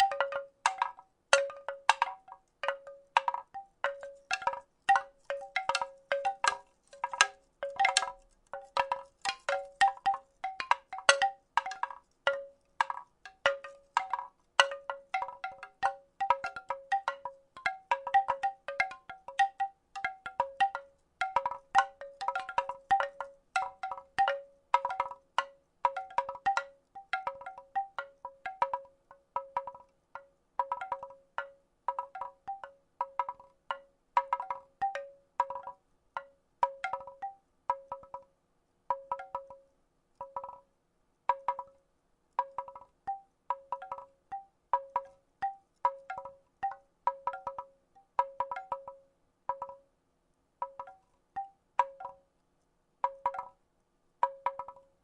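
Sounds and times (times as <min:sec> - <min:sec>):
wooden rattle clacking: 0:00.0 - 0:29.9.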